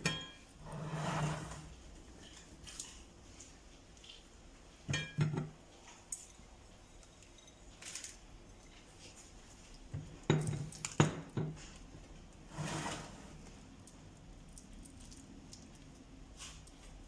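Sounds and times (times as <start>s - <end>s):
dishes knocking and clinking: 0.0s - 0.4s, 4.9s - 5.6s, 10.0s - 11.6s.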